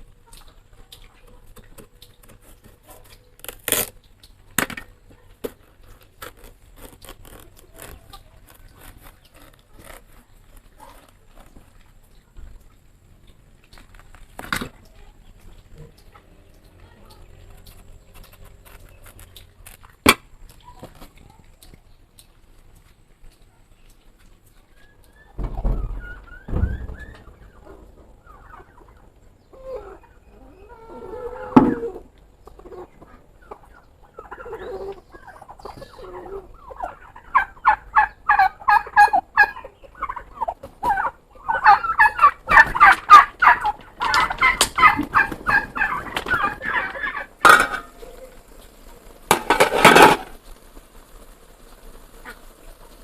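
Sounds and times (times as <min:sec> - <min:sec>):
fowl chattering calls: 0:24.8 - 0:48.4
sharp knocks: 0:25.4 - 0:27.6.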